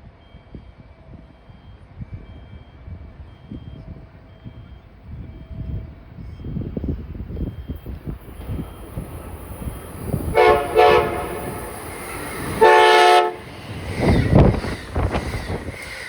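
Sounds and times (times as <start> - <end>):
low train rumble: 0.0 - 16.0
train air horn chord: 10.3 - 11.7, 12.5 - 13.5.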